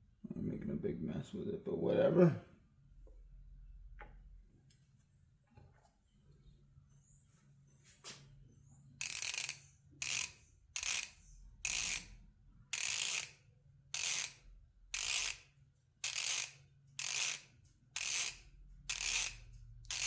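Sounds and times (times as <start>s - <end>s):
ratchet clicking: 9.0s - 20.0s.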